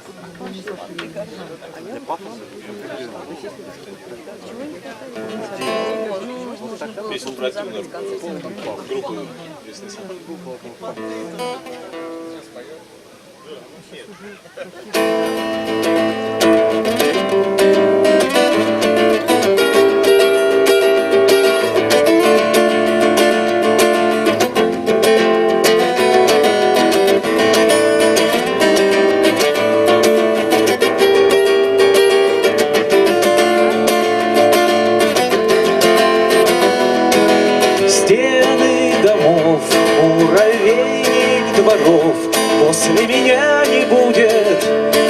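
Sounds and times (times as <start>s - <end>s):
acoustic guitar strumming: 4.5s - 7.8s, 10.8s - 12.9s, 14.8s - 45.0s.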